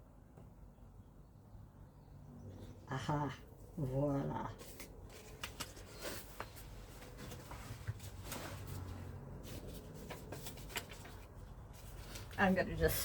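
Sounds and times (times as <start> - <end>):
wallpaper rustling: 4.3 - 13.0.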